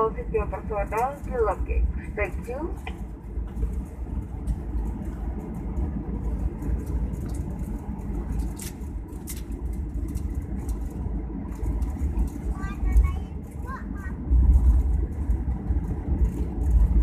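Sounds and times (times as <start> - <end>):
airliner engine rumble in cabin: 0.0 - 17.0.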